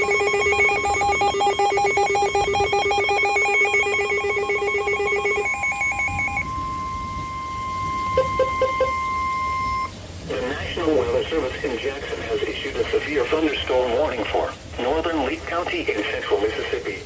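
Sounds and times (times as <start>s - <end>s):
pulsing electronic alert alarm: 0.0s - 9.9s.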